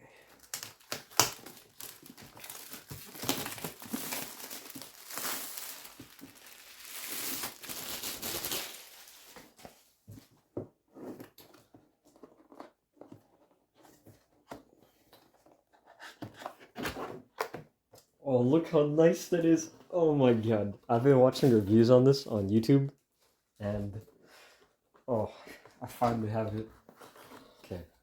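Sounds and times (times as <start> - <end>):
packaging crinkling: 0.3 - 9.7.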